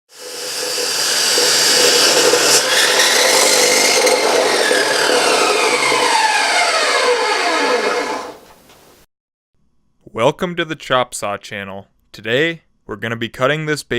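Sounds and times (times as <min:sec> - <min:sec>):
chop saw cutting: 0:00.1 - 0:08.4.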